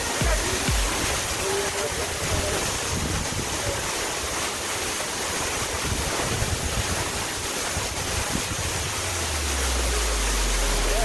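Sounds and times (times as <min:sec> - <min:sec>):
waterfall rushing: 0:00.0 - 0:11.0
wind buffeting microphone: 0:02.0 - 0:04.0, 0:05.4 - 0:09.3.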